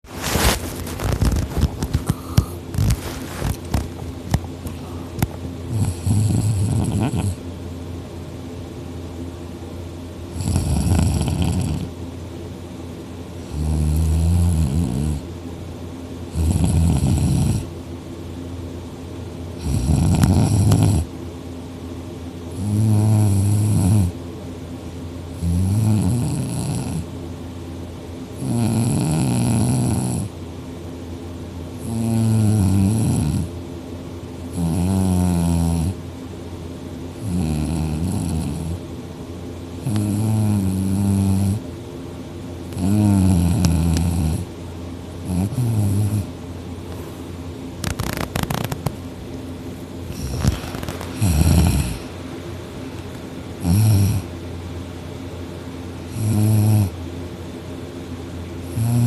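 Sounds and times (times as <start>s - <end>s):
man snoring loudly: 5.7s - 7.4s, 10.3s - 11.9s, 13.5s - 15.2s, 16.3s - 17.7s, 19.6s - 21.1s, 22.6s - 24.1s, 25.4s - 27.0s, 28.4s - 30.3s, 31.8s - 33.5s, 34.5s - 36.0s, 37.2s - 38.8s, 39.8s - 41.6s, 42.8s - 44.5s, 45.3s - 46.3s, 50.1s - 52.1s, 53.6s - 54.3s, 56.1s - 57.0s, 58.6s - 59.0s.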